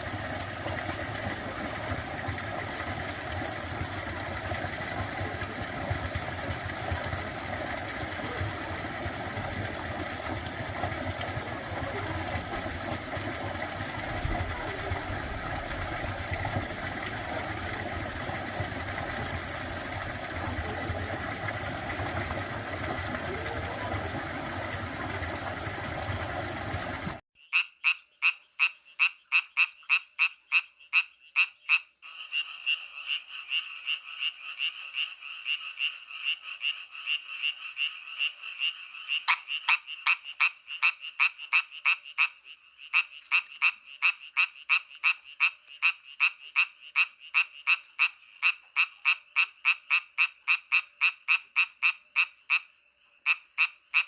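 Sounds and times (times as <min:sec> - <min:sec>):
frogs croaking: 0:27.4 - 0:54.0.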